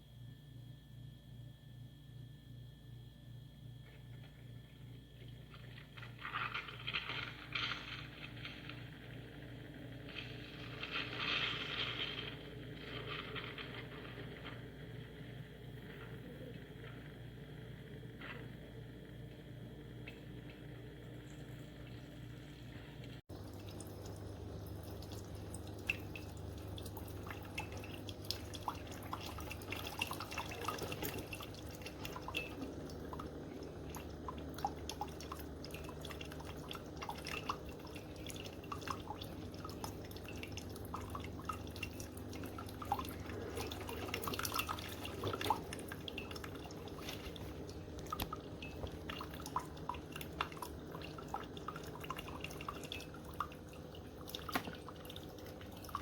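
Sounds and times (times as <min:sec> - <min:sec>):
coffee maker humming: 0:00.0 - 0:56.0
gurgling and dripping coffee: 0:03.4 - 0:56.0.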